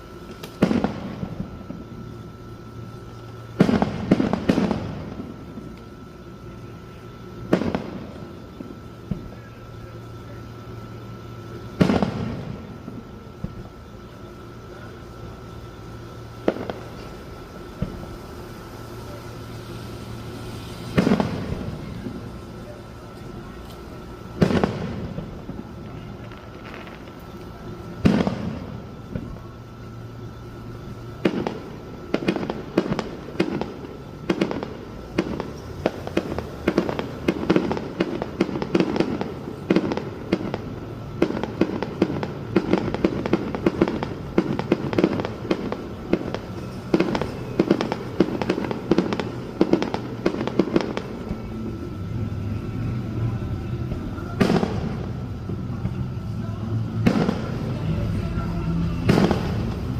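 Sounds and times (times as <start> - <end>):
fireworks exploding: 0.0 - 59.9.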